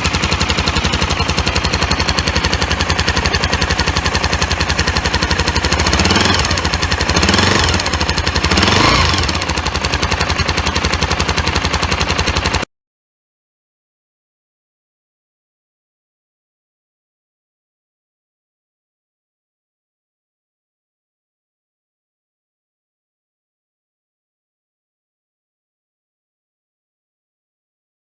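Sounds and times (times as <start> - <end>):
motorcycle engine idling and revving: 0.0 - 12.7.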